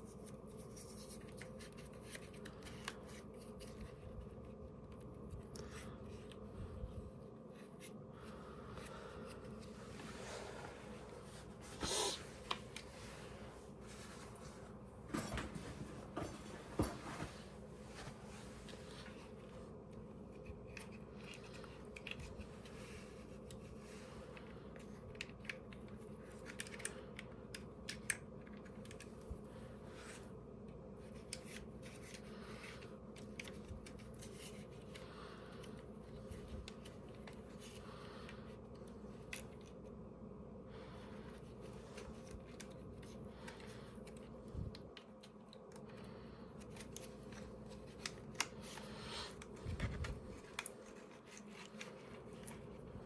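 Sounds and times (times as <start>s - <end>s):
steady low hum: 0.0s - 53.0s.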